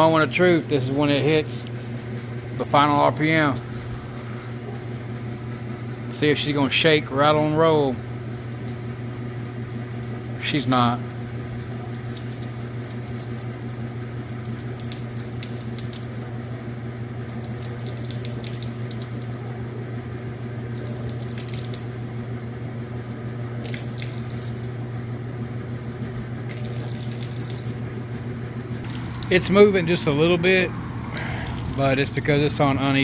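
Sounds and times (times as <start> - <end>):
washing machine motor hum: 0.0 - 33.0
water rushing through drain: 17.3 - 19.4, 26.5 - 28.0, 28.8 - 29.9, 31.1 - 32.4.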